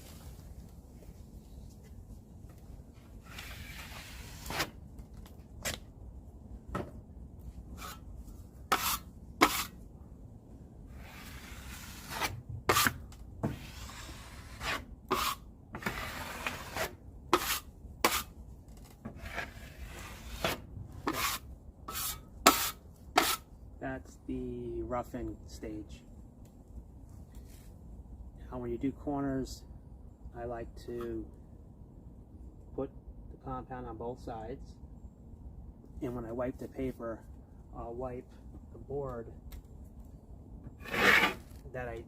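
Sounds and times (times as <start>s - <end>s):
drywall knife scraping: 3.2s - 4.8s, 7.7s - 8.1s, 8.7s - 9.8s, 10.9s - 18.3s, 19.1s - 23.4s, 40.8s - 41.6s.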